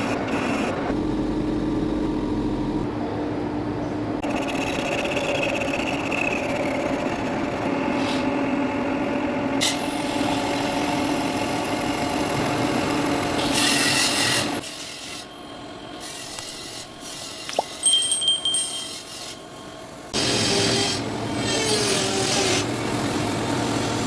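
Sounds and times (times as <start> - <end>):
lathe cutting tool scraping: 9.6 - 15.3.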